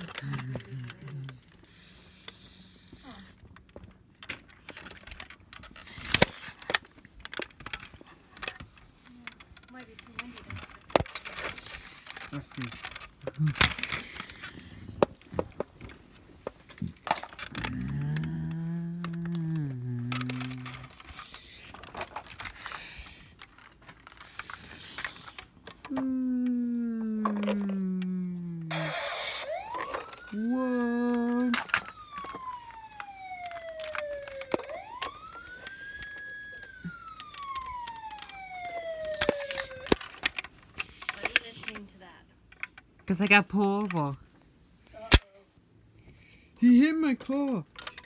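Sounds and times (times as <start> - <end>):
wailing siren: 17.4 - 22.2, 25.9 - 40.3
low drawn-out voice-like tone: 17.5 - 21.1, 25.9 - 31.7.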